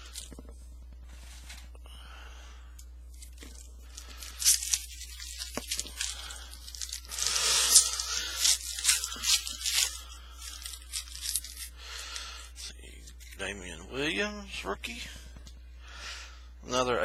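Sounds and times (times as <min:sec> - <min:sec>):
foil wrapper tearing and crinkling: 0:03.2 - 0:11.7.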